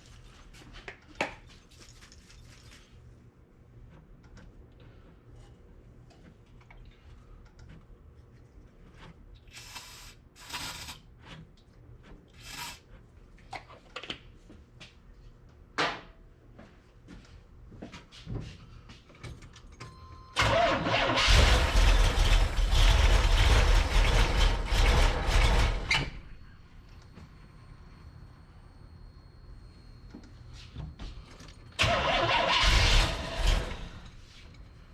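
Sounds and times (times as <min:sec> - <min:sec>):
engine cranking on starter: 0:20.4 - 0:26.2, 0:31.8 - 0:34.2.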